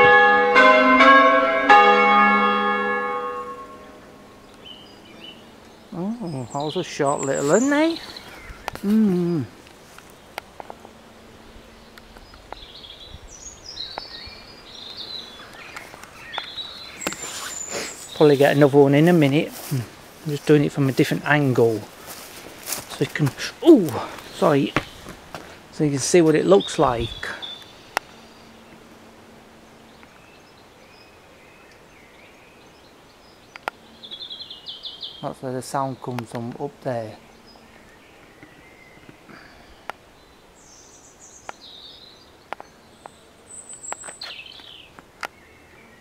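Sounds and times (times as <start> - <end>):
bird trill: 0.0 - 8.8, 11.8 - 19.1
small birds singing: 1.7 - 46.0.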